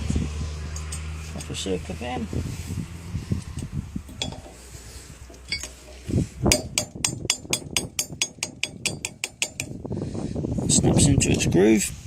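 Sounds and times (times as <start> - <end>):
metal-on-metal clicks: 0.7 - 1.6, 3.4 - 4.6, 5.2 - 9.8
light metallic clinks: 3.5 - 4.6, 5.3 - 6.0.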